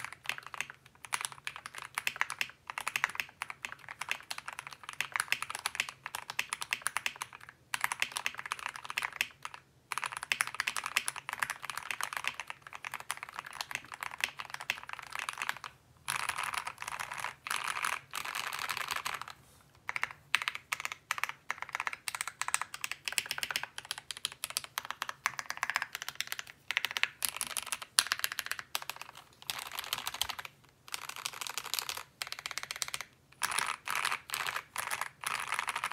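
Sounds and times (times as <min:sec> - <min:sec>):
mechanical keyboard typing: 0:00.0 - 0:19.3, 0:19.9 - 0:35.9.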